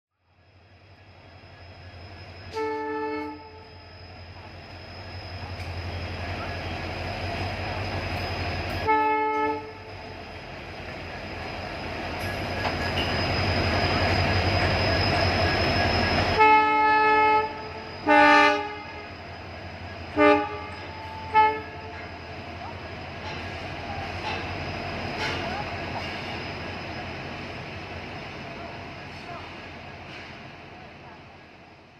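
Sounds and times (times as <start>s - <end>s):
rumble of running train: 0.2s - 31.9s
locomotive horn blasts: 2.5s - 3.7s, 8.8s - 9.9s, 16.4s - 19.1s, 20.1s - 21.9s.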